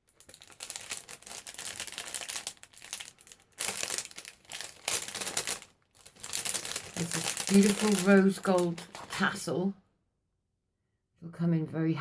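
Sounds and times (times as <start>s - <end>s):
packaging crinkling and rustling: 0.0s - 9.4s.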